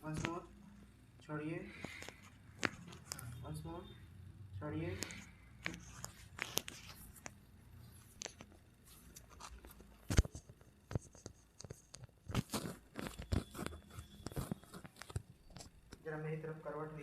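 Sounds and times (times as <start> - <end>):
clicks and rustles of body: 1.8 - 3.3, 5.0 - 7.4, 8.0 - 16.0.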